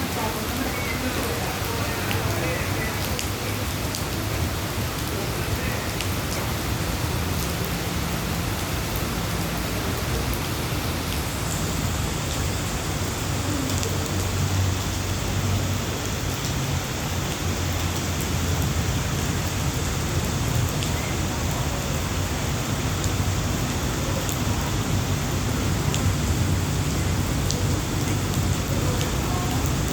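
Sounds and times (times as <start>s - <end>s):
heavy rain pouring: 0.0s - 29.9s.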